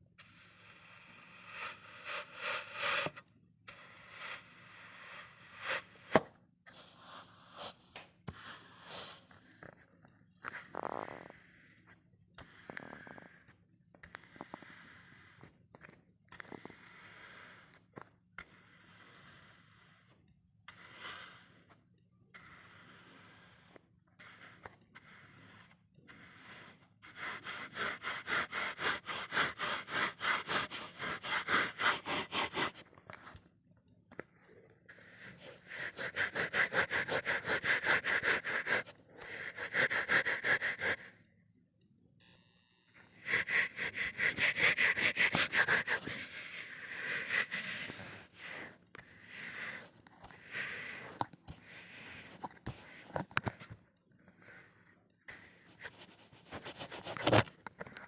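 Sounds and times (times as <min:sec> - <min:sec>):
kinetic sand gritty strokes: 0:43.2 - 0:51.0.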